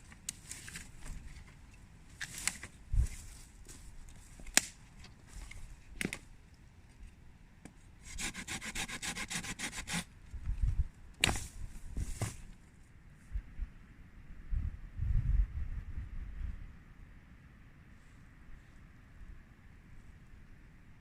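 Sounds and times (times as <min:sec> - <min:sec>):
rasping saw strokes on wood: 0:08.0 - 0:10.1.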